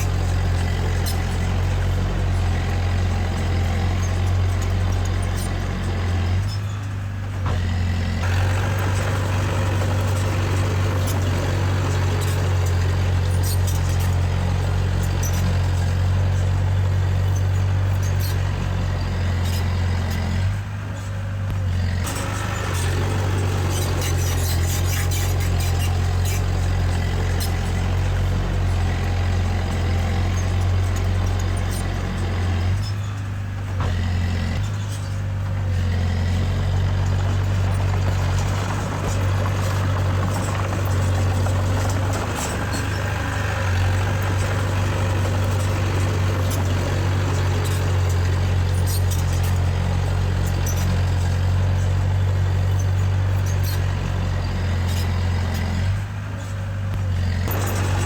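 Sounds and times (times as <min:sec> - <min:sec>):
diesel engine of heavy machinery: 0:00.0 - 0:58.0
clanking and rattling: 0:22.0 - 0:28.0, 0:56.4 - 0:58.0.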